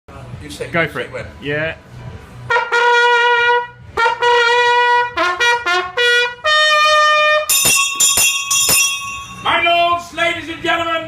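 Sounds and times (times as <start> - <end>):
trumpet fanfare: 2.5 - 8.9
handbell ringing: 7.5 - 9.9.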